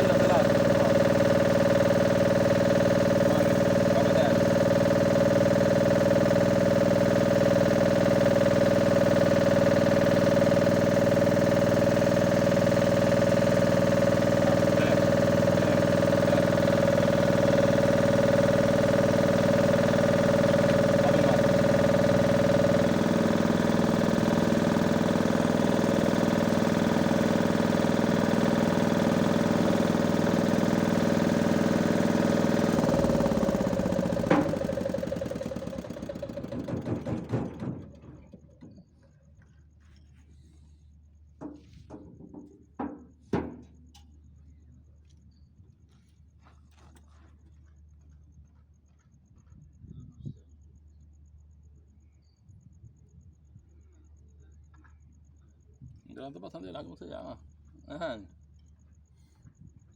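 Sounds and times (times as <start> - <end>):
machine motor humming: 0.0 - 38.8.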